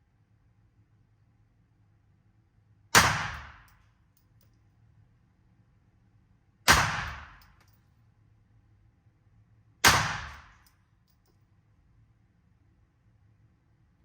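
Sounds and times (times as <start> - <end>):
gunshots: 3.0 - 3.6, 6.7 - 7.4, 9.8 - 10.6.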